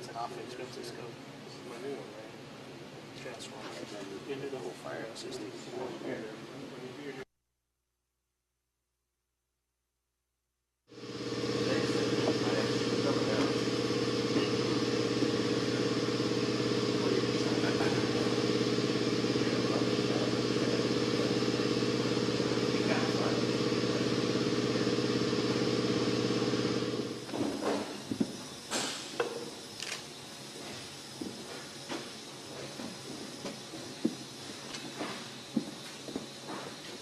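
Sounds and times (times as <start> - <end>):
machine hum: 10.9 - 37.0.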